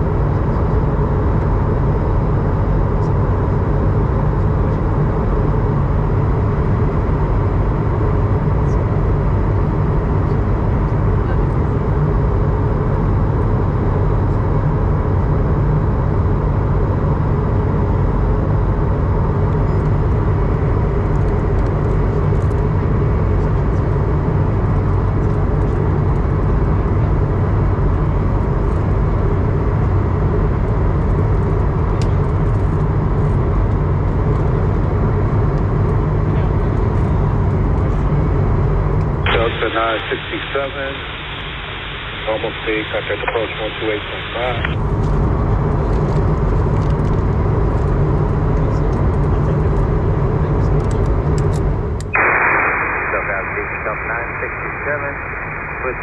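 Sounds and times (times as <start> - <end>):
jet engine drone: 0.0 - 56.0
faint steady tones: 39.3 - 44.8, 52.2 - 56.0.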